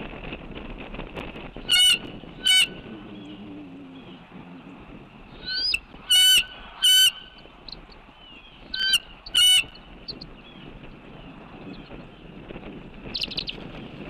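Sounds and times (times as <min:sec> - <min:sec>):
harsh bird calls: 0:01.6 - 0:12.4.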